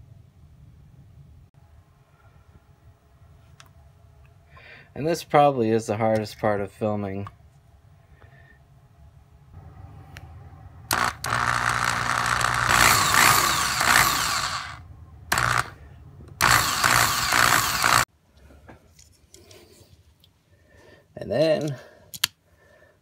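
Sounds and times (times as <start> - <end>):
power drill boring into metal: 10.9 - 15.8, 16.4 - 18.1.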